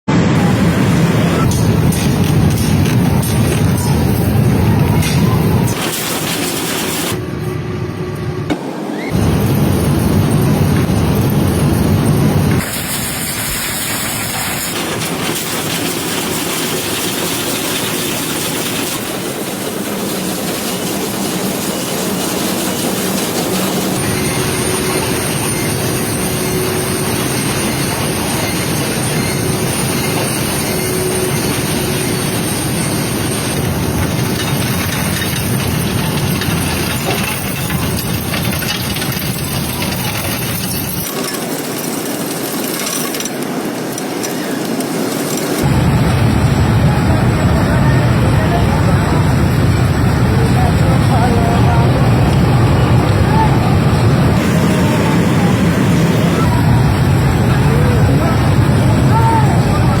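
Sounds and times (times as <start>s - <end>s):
clattering hissing machines: 0.2s - 60.0s.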